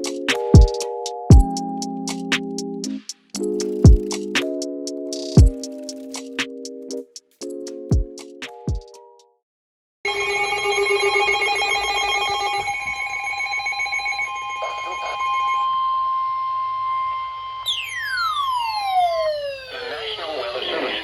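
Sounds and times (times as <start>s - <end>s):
weather radio alert tones: 13.9s - 16.1s, 17.7s - 21.0s
falling whistle-like sweep: 15.7s - 20.3s.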